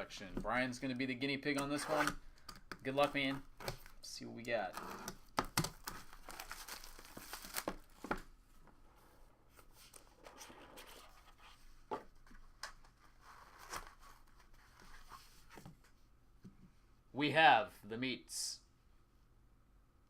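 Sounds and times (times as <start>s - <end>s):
packaging tearing and crinkling: 5.5s - 8.2s.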